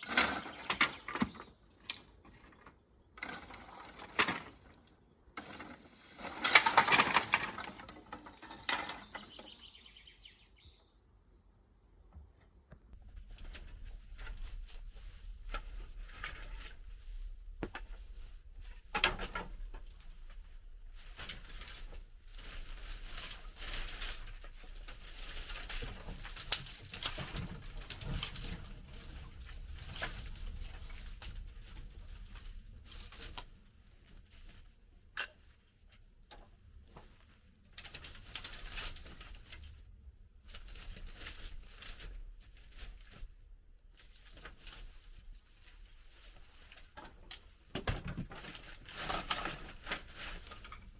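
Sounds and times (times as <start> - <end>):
hay rustling: 13.0 - 18.9.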